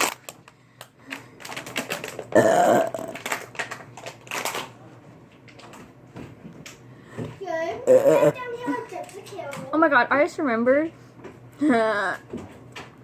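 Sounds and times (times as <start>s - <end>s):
clicks and rustles: 0.0s - 2.3s
person burping loudly: 2.3s - 3.3s, 7.8s - 8.4s.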